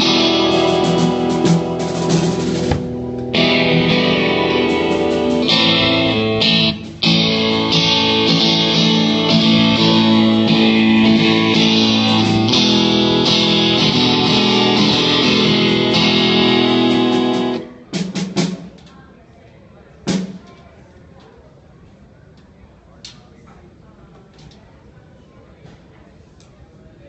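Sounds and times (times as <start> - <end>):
guitar strumming chords: 0.0 - 17.7.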